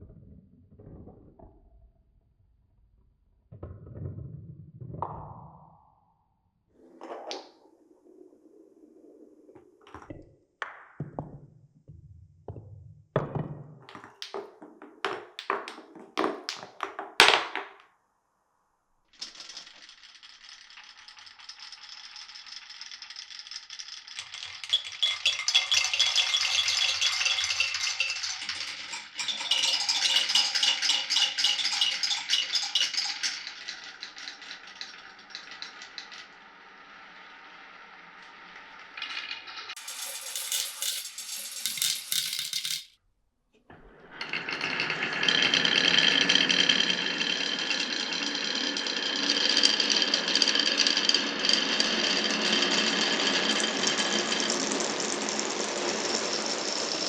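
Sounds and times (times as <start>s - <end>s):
marbles rolling rattle: 13.9s - 14.4s, 15.1s - 17.3s, 19.2s - 43.0s, 44.2s - 57.0s
marbles clacking down wooden run: 13.9s - 17.8s, 19.2s - 36.4s, 39.0s - 42.9s, 44.6s - 57.0s.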